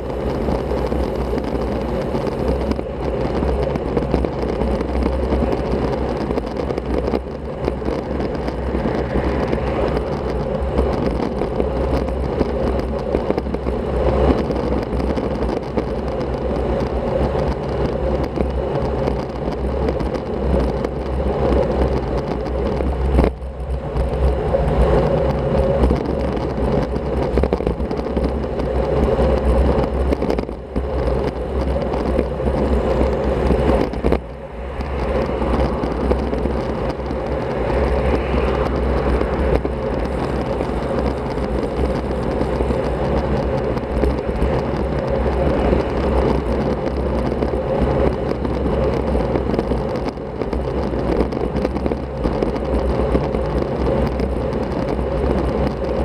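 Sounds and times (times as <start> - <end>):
wind and road noise from bicycle: 0.0 - 56.0
low rumble: 19.9 - 56.0.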